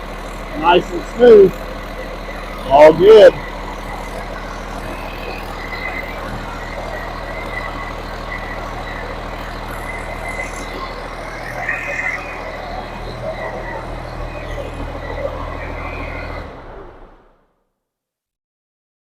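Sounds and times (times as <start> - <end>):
diesel engine idling: 0.0 - 17.5.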